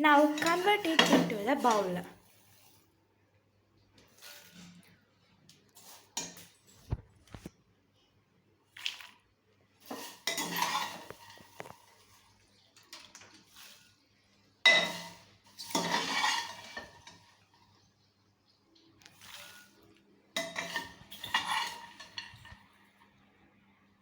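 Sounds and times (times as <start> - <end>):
popcorn rattling in metal cooker: 0.1 - 2.0, 20.4 - 22.6.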